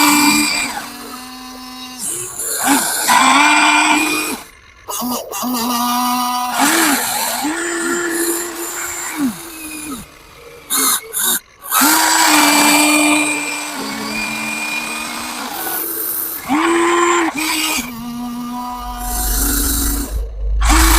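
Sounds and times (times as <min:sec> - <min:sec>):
electric motor whine: 0:00.0 - 0:04.5, 0:05.7 - 0:20.9.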